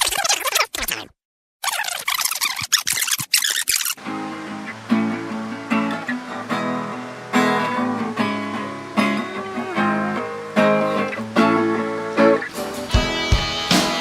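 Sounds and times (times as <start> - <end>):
acoustic guitar strumming: 4.0 - 14.0.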